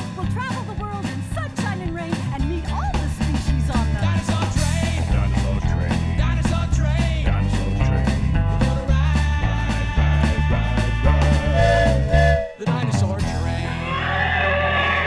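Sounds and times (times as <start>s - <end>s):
stepping bass line: 0.0s - 13.7s
upbeat children's theme music: 0.0s - 15.0s
drum hits: 4.3s - 12.9s.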